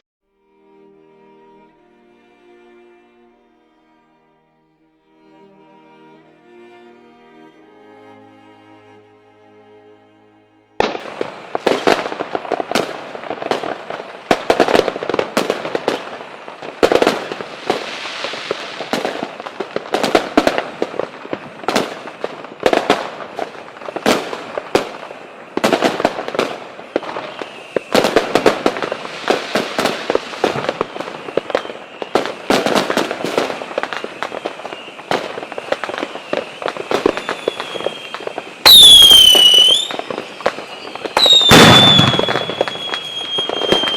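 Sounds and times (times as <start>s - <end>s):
fireworks bangs and crackling: 10.8s - 43.9s
loud falling whistle: 27.0s - 28.0s, 30.6s - 32.7s, 33.4s - 43.9s.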